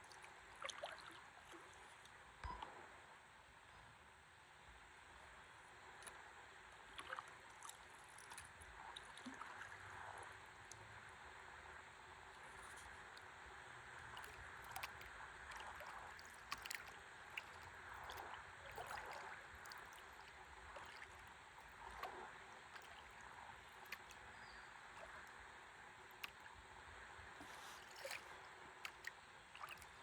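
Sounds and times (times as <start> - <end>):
small clicks and drips: 0.0 - 2.8, 5.9 - 10.9, 12.3 - 26.6, 27.4 - 30.0
river water lapping against board: 14.0 - 26.6, 27.3 - 30.0.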